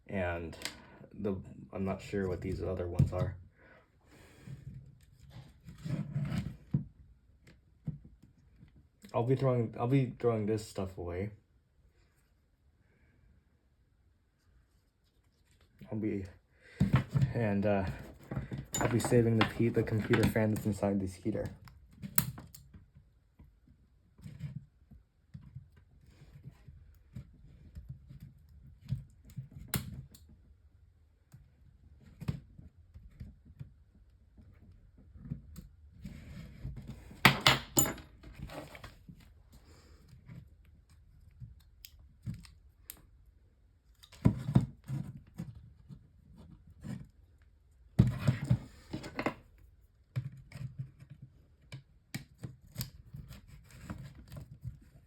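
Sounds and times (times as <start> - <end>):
plastic and metal parts clattering: 16.8 - 20.8.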